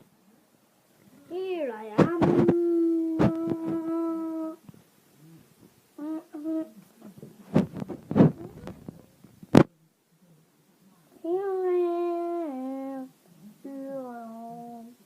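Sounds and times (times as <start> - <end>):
person humming: 2.0 - 4.6.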